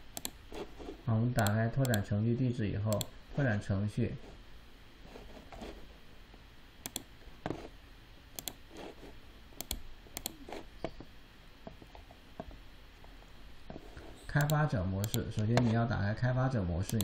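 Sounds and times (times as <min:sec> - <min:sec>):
computer mouse clicks: 0:00.1 - 0:00.6, 0:01.4 - 0:02.1, 0:02.9 - 0:03.1, 0:06.8 - 0:07.6, 0:08.4 - 0:08.9, 0:09.6 - 0:11.1, 0:14.4 - 0:15.7.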